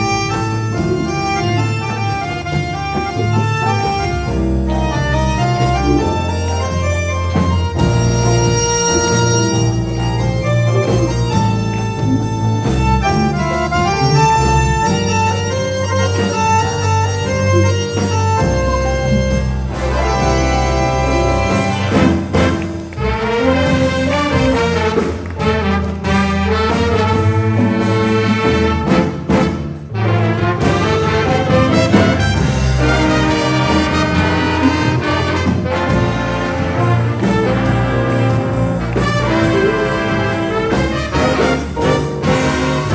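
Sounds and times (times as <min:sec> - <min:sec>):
brass section holding chords: 0:00.0 - 0:42.9
jazz orchestra playing: 0:00.0 - 0:42.9
walking bass line: 0:00.0 - 0:42.9.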